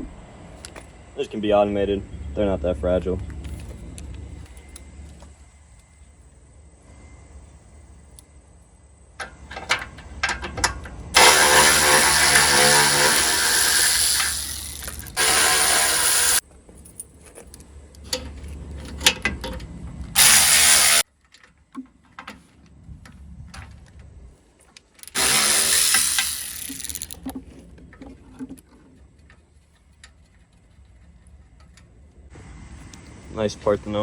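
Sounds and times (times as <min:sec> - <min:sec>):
metal socket and bolts rattling: 0:09.5 - 0:17.1, 0:25.0 - 0:27.4
power tool spinning bolts: 0:11.2 - 0:16.4, 0:20.2 - 0:21.1, 0:25.0 - 0:27.4.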